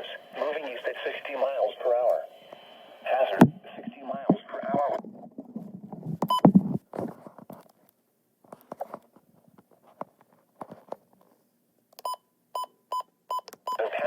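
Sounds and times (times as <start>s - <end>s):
faint clicks and rustles: 4.7s - 11.5s.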